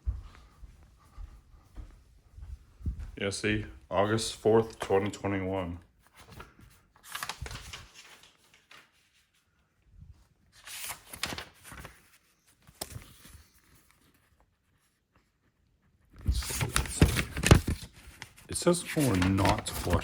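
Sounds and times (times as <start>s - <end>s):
paper pages rustling: 4.0s - 20.0s.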